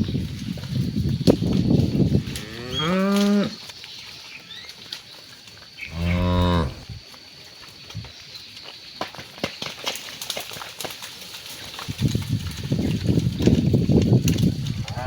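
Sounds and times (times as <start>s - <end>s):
cattle mooing: 2.2s - 3.6s, 5.9s - 7.0s.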